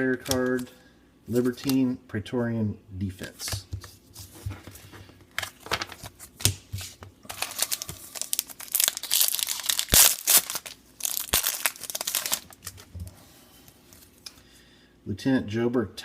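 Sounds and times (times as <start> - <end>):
foil wrapper tearing and crinkling: 7.3 - 12.8.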